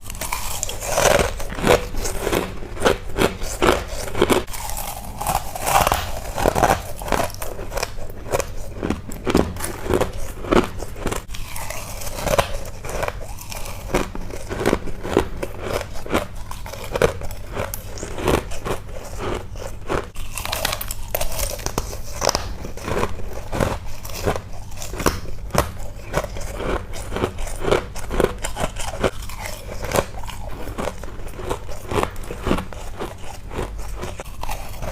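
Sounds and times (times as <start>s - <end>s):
ice being bitten and crunched: 0.0s - 34.9s.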